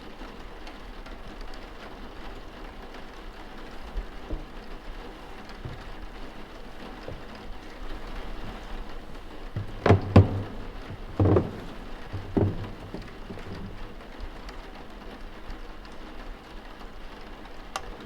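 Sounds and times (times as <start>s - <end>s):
steady rain: 0.0s - 18.0s
dull thumps: 3.6s - 14.4s
sharp knocks: 4.3s - 14.1s.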